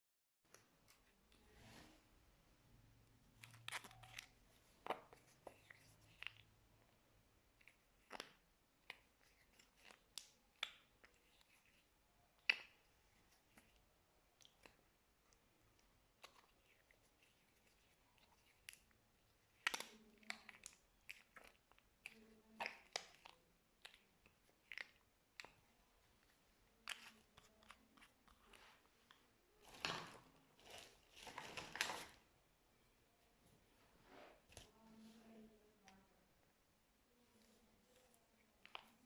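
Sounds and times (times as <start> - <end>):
slime squishing and crackling: 3.3 - 6.8, 7.4 - 28.8.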